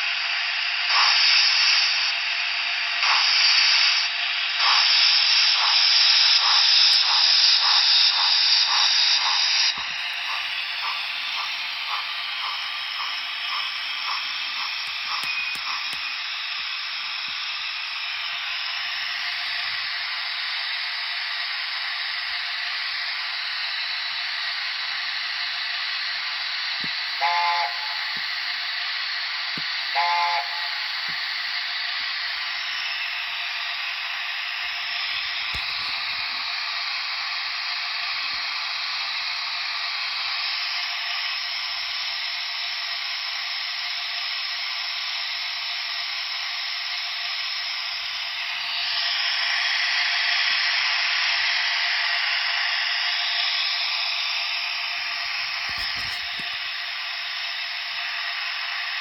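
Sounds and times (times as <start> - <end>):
model locomotive steam hiss: 0.0 - 59.0
whistle blasts: 27.2 - 28.0, 29.9 - 30.8.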